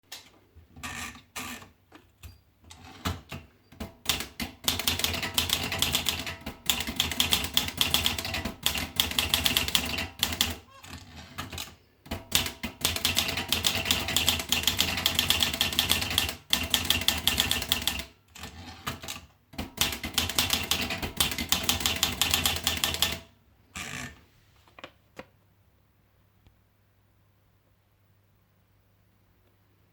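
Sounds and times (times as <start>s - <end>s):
manual typewriter typing: 2.7s - 23.3s.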